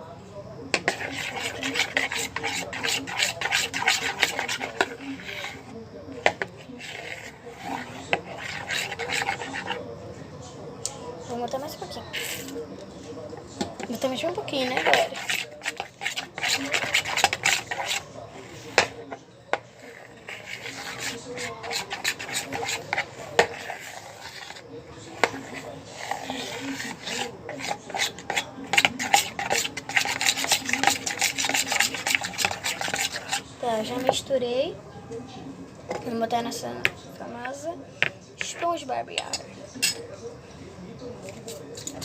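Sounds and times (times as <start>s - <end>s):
utensil scraping a container: 0.7s - 9.9s, 12.0s - 12.7s, 13.6s - 34.3s, 36.8s - 40.0s, 41.2s - 42.0s.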